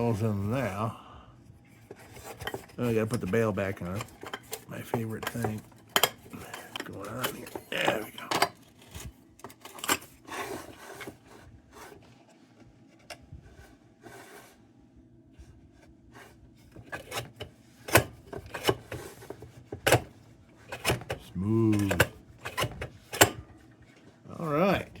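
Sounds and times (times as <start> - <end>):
metal lantern parts clicking: 2.3 - 10.1, 20.7 - 23.4.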